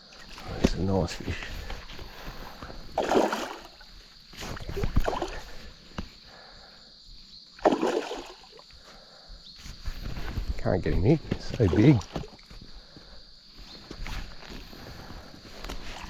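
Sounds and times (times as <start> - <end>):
fish thrashing water splashing: 2.9 - 3.8, 4.4 - 5.6, 7.6 - 8.6.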